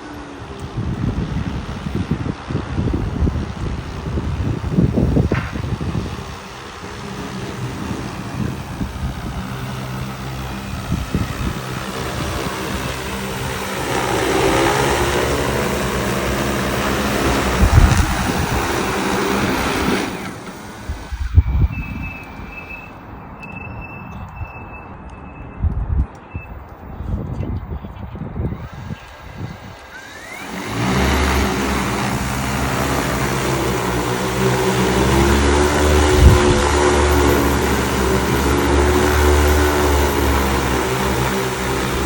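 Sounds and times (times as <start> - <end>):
machine humming and hissing: 0.0 - 23.0, 28.5 - 42.0
short high beeps: 21.5 - 25.6.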